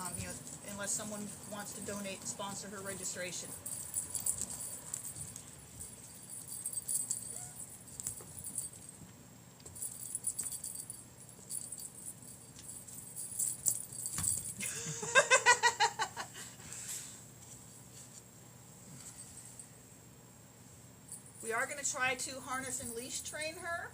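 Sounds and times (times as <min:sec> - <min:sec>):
cat toy rattling and jingling: 0:00.0 - 0:14.6.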